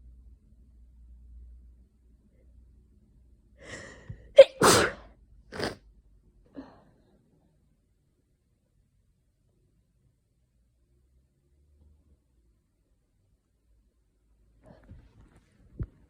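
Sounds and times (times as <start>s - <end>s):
person sneezing: 3.7s - 5.8s.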